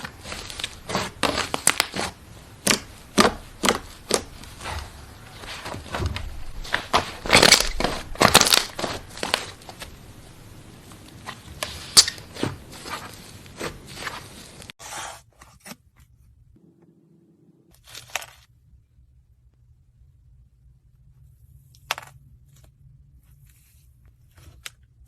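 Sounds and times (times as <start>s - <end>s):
slime clicking and crackling: 0.3s - 4.6s, 6.6s - 10.0s.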